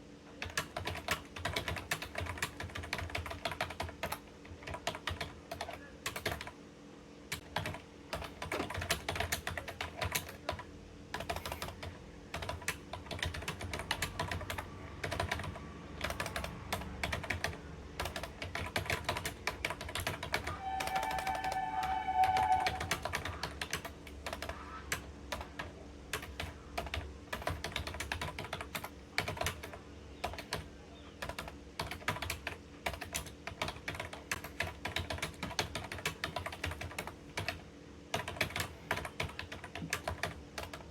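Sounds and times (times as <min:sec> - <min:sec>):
fast keyboard typing: 0:00.4 - 0:06.6, 0:07.3 - 0:40.9
brief pitched tone: 0:20.4 - 0:23.4.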